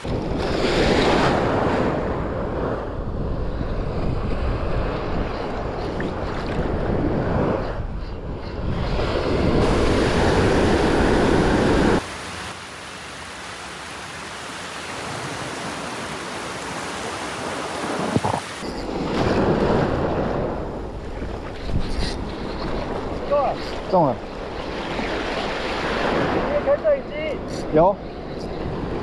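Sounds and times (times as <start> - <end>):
wind buffeting microphone: 0.0 - 12.0
surf washing on beach: 8.6 - 21.6, 22.2 - 27.9.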